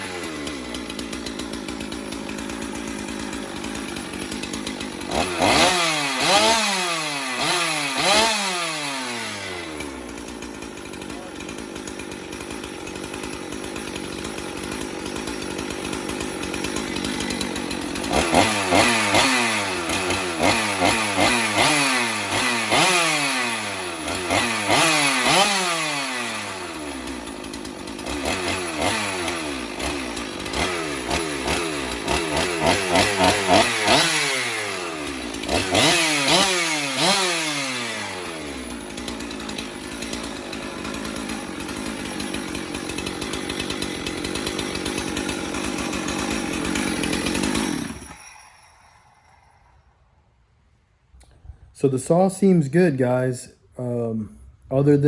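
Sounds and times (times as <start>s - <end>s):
chainsaw idling and revving: 0.0s - 49.9s.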